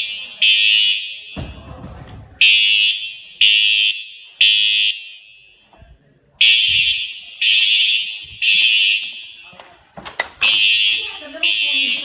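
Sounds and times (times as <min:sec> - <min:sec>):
fire alarm horn blasts: 0:00.0 - 0:01.4, 0:06.4 - 0:09.5, 0:10.4 - 0:12.0.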